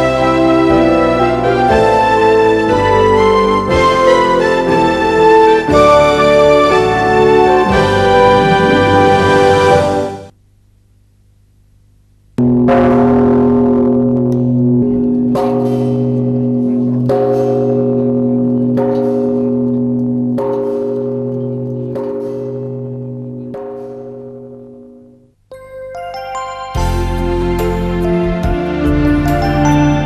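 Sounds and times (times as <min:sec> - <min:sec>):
bell tolling: 0:12.4 - 0:28.1, 0:29.2 - 0:30.0.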